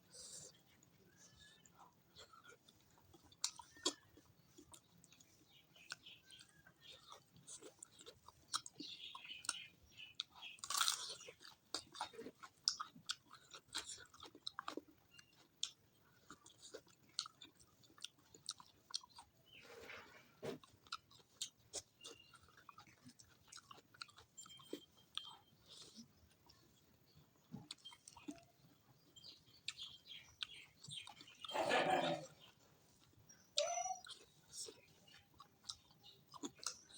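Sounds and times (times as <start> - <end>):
person chewing food: 0.0 - 36.9
crunchy bite: 10.5 - 12.1.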